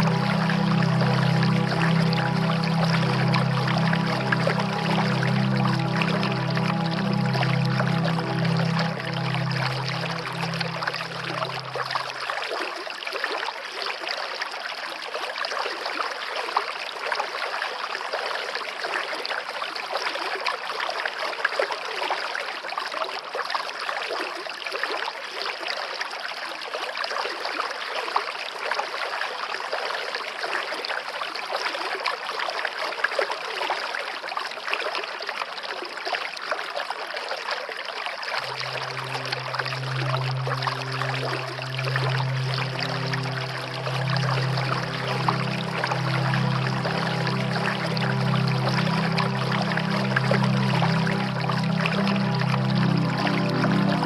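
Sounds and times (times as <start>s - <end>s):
soft music held note: 0.0s - 12.3s, 38.4s - 54.0s
stream gurgling over stones: 0.0s - 54.0s.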